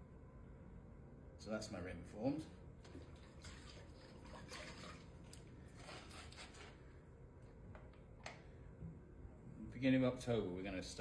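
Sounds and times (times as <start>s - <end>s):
low steady hum: 0.0s - 11.0s
wet clay scraping: 2.9s - 6.9s.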